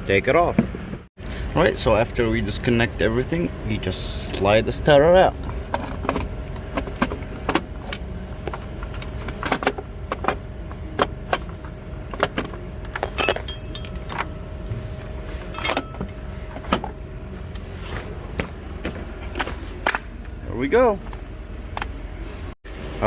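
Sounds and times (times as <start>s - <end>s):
metallic clinks and knocks: 13.0s - 14.2s.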